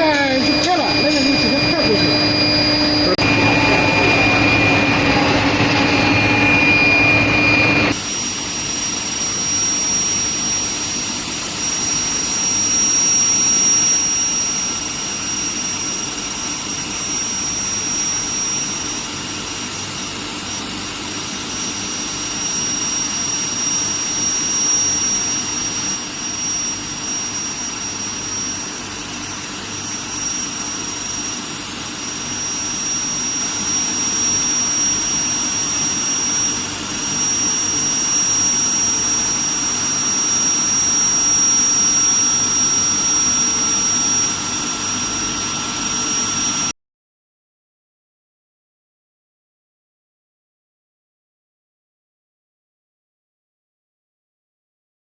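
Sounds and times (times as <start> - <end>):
industrial machine whooshing hum: 0.0 - 10.4
high-pitched machine whine: 0.0 - 46.8.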